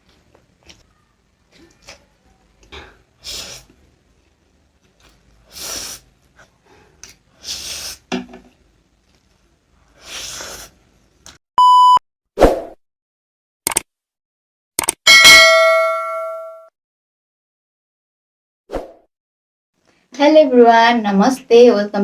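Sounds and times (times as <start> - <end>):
short electronic beep: 11.6 - 12.0.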